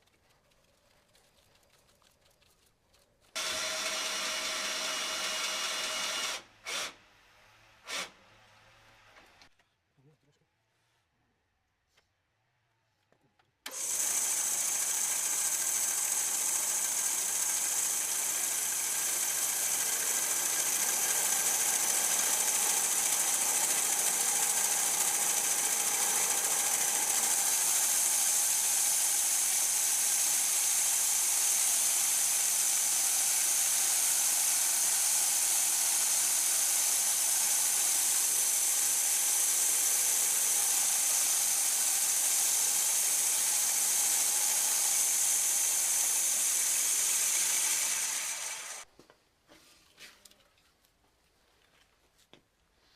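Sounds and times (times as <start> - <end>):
machine tool whirring: 3.4 - 6.9, 13.7 - 48.8.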